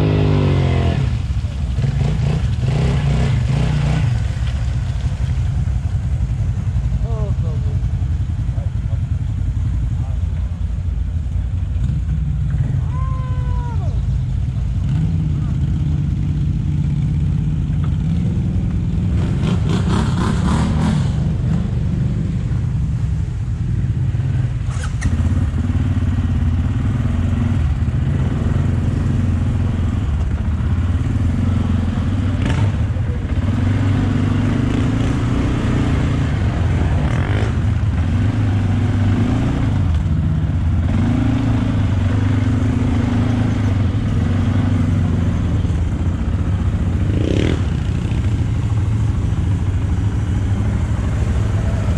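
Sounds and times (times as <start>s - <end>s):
atv engine revving: 0.0s - 5.1s, 14.4s - 22.6s, 24.0s - 51.9s
knocks and splashes: 1.1s - 6.4s.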